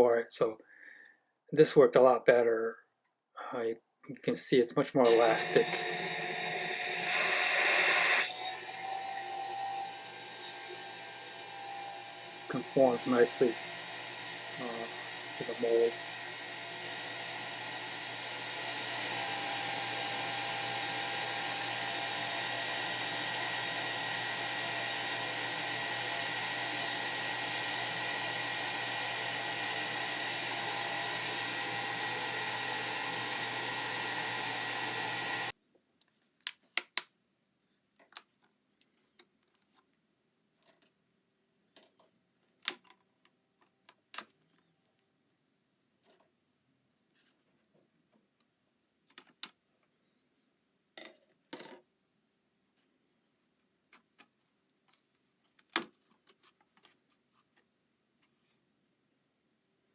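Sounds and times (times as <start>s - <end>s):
electric motor and fan whirring: 5.1s - 35.5s.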